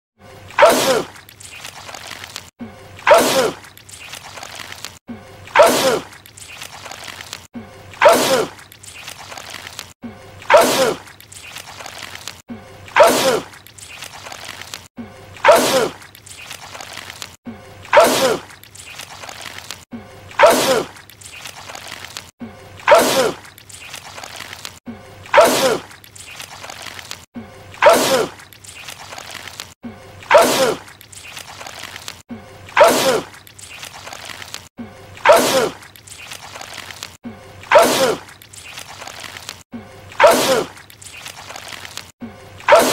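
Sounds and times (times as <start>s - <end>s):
man sneezing loudly: 40.2s - 40.7s.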